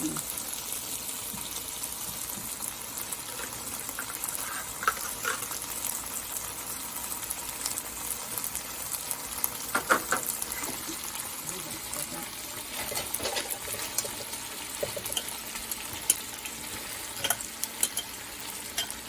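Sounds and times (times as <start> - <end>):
food sizzling in a wok: 0.0 - 19.0
utensil clinking on wok: 17.2 - 19.0.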